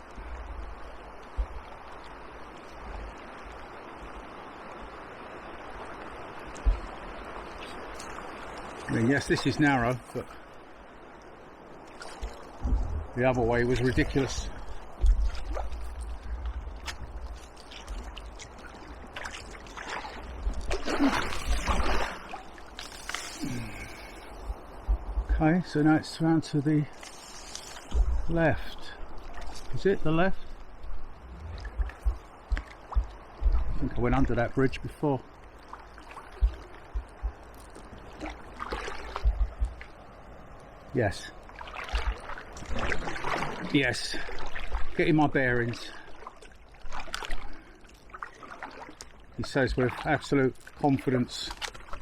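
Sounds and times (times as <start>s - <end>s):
paddle splashing in water: 11.8s - 24.7s, 26.9s - 28.3s, 29.1s - 29.8s, 35.6s - 40.0s, 41.4s - 45.0s, 45.8s - 52.0s
wind buffeting on microphone: 12.2s - 22.2s, 27.8s - 34.7s, 36.2s - 39.9s
dull thump: 12.6s - 13.1s.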